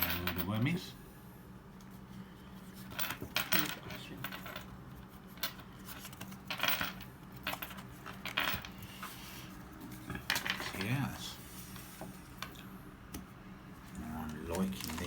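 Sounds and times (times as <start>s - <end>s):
trading cards rustling: 14.2s - 15.0s.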